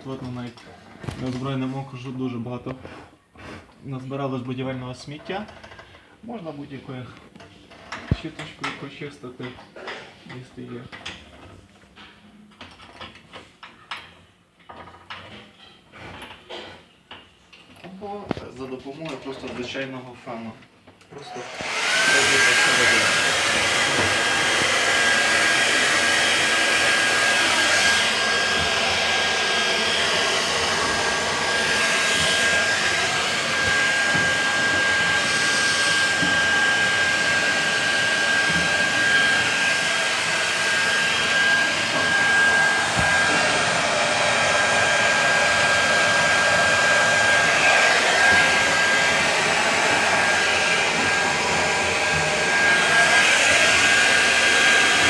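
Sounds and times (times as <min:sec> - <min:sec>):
hair dryer running: 0:21.2 - 0:55.0.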